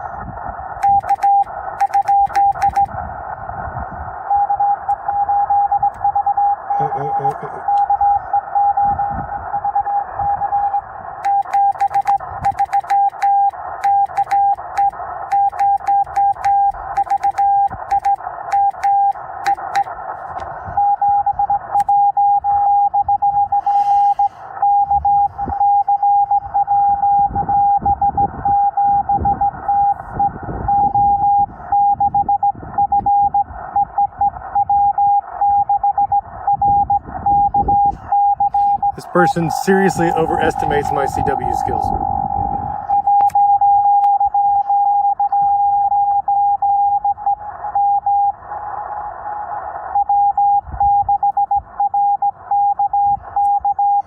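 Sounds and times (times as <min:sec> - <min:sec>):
morse code tone: 0:00.8 - 0:02.9, 0:04.2 - 0:20.0, 0:20.8 - 0:54.0
radio band hiss: 0:06.6 - 0:07.8, 0:23.5 - 0:24.6, 0:37.8 - 0:42.0.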